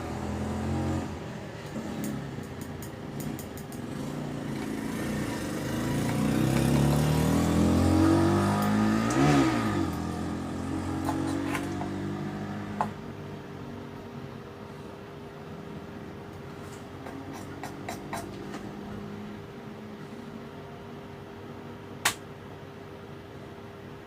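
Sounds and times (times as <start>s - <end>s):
vehicle driving past: 3.9s - 12.9s.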